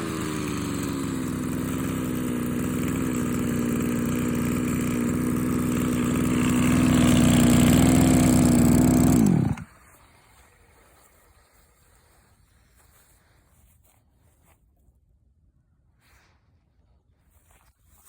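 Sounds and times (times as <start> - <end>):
brush cutter engine running: 0.0 - 9.7.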